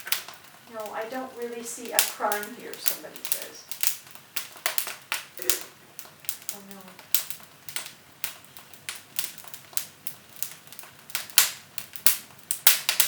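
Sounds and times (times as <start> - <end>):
firewood crackling and popping: 0.0 - 13.0.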